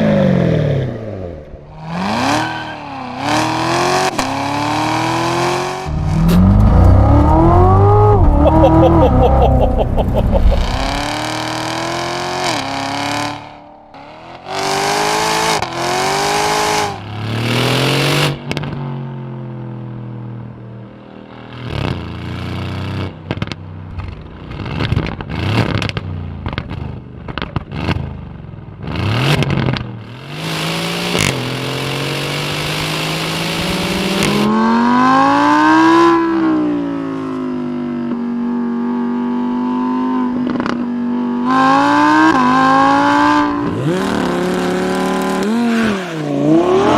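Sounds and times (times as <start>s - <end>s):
car engine revving: 1.8s - 18.7s, 28.9s - 36.4s, 41.4s - 46.9s
exhaust crackles and pops: 5.9s - 11.3s, 23.2s - 28.0s.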